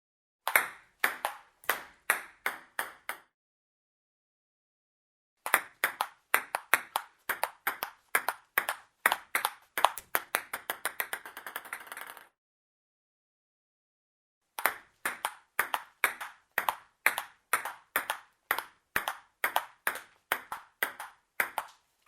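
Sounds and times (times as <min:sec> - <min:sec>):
table tennis ball hits: 0:09.9 - 0:12.2.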